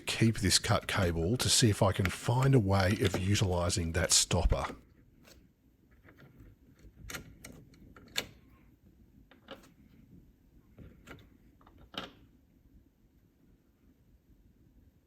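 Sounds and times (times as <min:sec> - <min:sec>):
keyboard parts clicking: 0:00.8 - 0:03.7.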